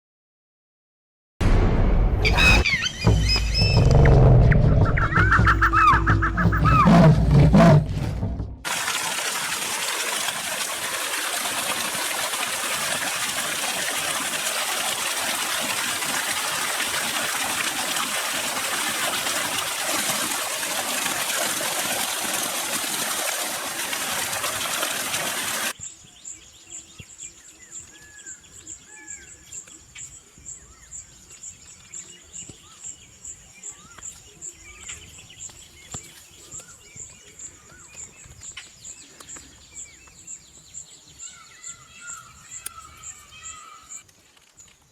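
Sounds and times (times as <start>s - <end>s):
birds chirping: 2.2s - 7.7s
rushing water: 8.6s - 25.8s.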